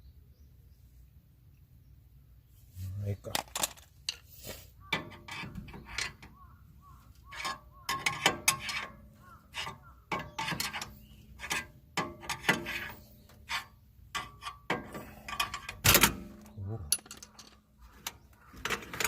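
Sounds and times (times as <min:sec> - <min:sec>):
sharp metal clanks: 0:07.3 - 0:17.6.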